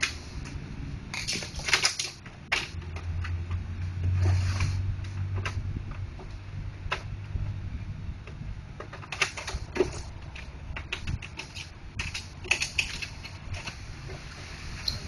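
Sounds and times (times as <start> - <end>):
low steady hum: 0.0 - 15.0
plastic parts clicking and knocking: 1.1 - 4.2, 5.0 - 7.1, 8.2 - 14.3.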